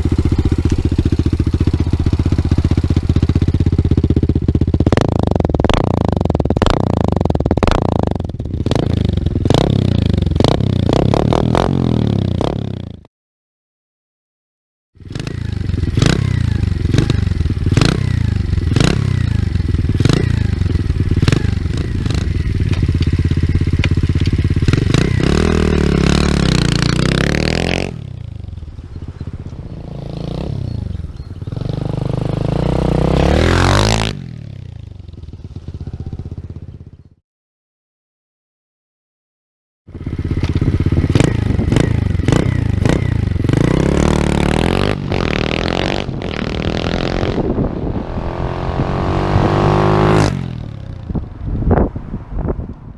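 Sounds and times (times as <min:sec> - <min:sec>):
motorbike engine revving: 0:00.0 - 0:13.1, 0:15.0 - 0:37.0, 0:39.9 - 0:51.3.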